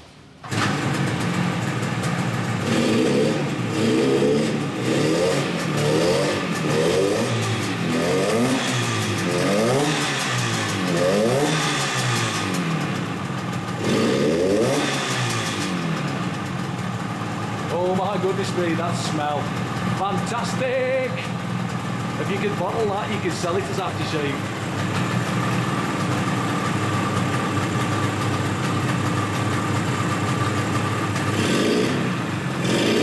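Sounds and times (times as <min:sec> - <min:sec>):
two-stroke motorcycle engine revving: 0:00.4 - 0:33.0.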